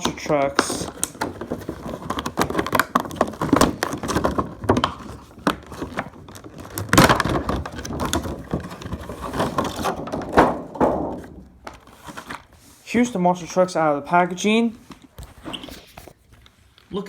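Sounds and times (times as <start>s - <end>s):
packaging rustling and crackling: 0.0s - 13.6s.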